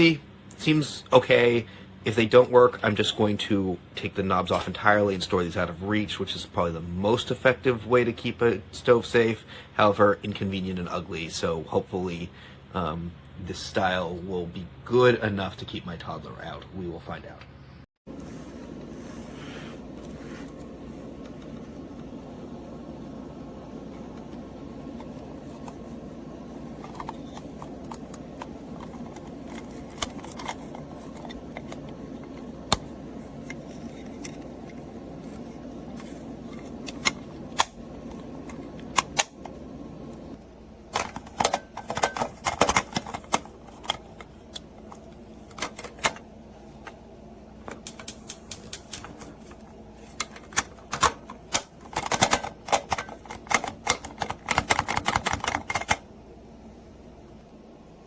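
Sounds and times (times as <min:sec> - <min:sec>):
steady low hum: 0:00.0 - 0:58.0
hard plastic clicks: 0:50.2 - 0:56.0.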